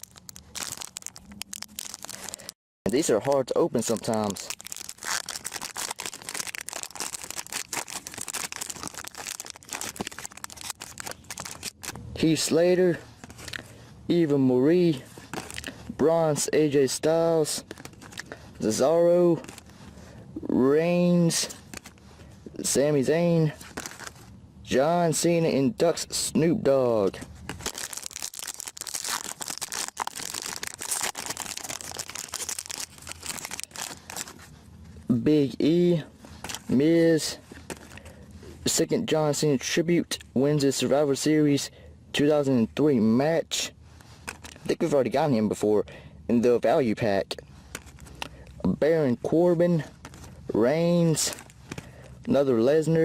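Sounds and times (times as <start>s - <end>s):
foil wrapper crinkling and tearing: 0.0s - 12.0s, 15.2s - 15.8s, 17.6s - 18.4s, 23.7s - 24.2s, 27.5s - 34.6s, 47.6s - 48.2s, 51.2s - 51.9s.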